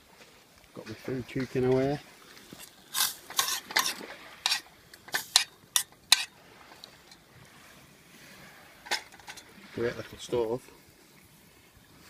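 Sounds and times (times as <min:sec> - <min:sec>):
metal utensil scraping pot: 0:02.6 - 0:06.4.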